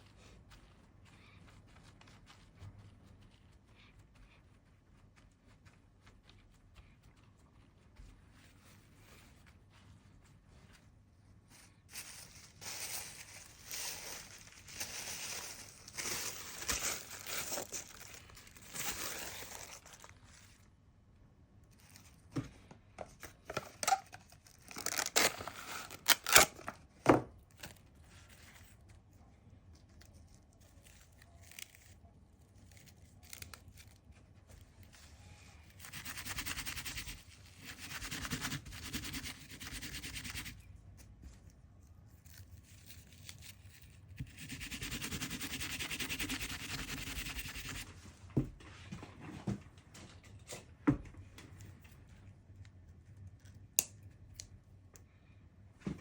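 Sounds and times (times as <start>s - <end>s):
paper rustling and crinkling: 0.0s - 20.7s, 23.1s - 44.3s.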